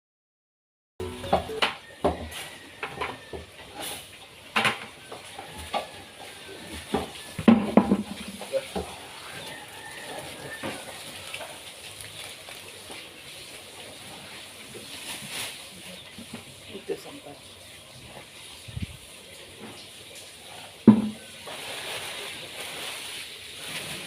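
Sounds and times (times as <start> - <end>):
knocks and clatters: 6.9 - 9.0.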